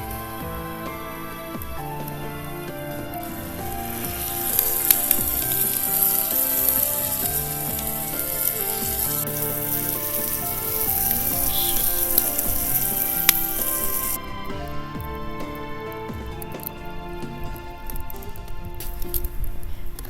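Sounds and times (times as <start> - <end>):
meat sizzling over fire: 0.0 - 14.2
background music: 0.0 - 20.0.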